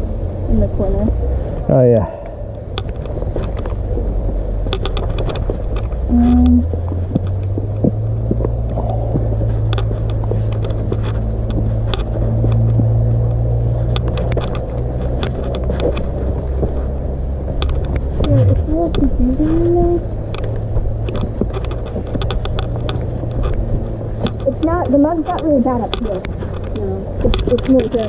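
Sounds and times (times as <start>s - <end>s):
low drone: 7.4s - 16.3s, 17.9s - 24.5s.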